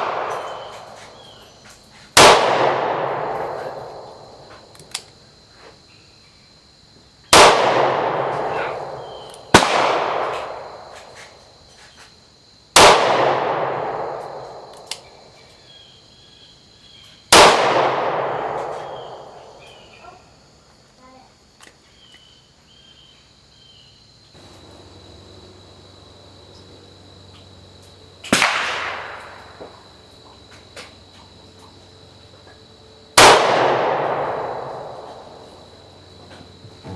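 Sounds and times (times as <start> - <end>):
revolver shots echoing: 0.0 - 1.3, 7.4 - 10.8.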